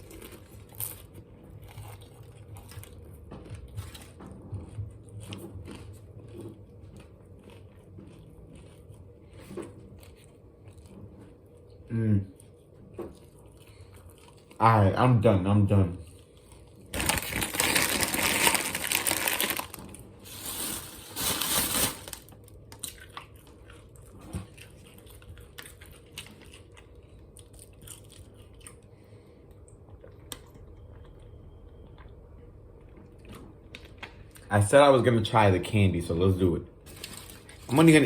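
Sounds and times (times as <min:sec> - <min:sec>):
snack packaging crinkling: 0:16.7 - 0:28.4, 0:36.9 - 0:38.0.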